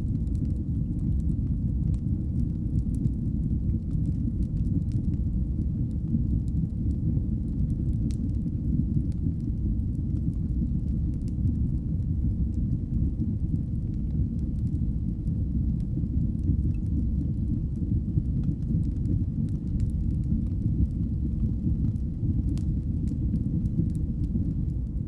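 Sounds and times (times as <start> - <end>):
fire crackles and pops: 0.0 - 25.0
low rumble of fire: 0.0 - 25.0.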